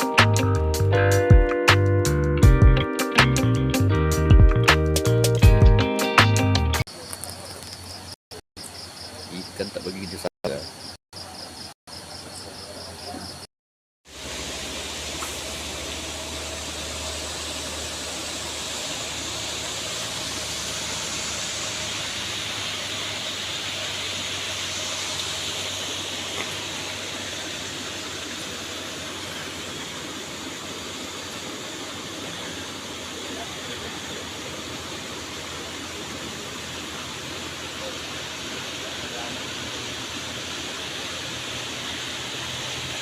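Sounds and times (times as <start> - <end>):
rushing water: 0.0 - 0.3, 14.0 - 43.0
high insect drone: 6.9 - 13.5, 14.1 - 43.0.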